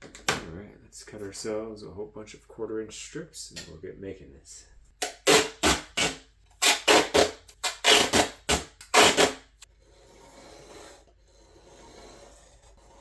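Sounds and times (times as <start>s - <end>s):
tape cutting rasps: 5.0s - 9.7s
tape rubbing: 5.1s - 9.7s.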